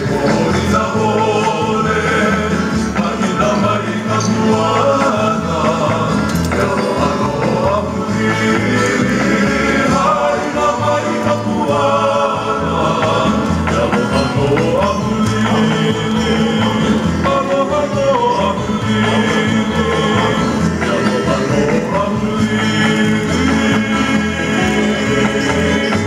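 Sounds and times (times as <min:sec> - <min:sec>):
person singing: 0:00.0 - 0:26.0.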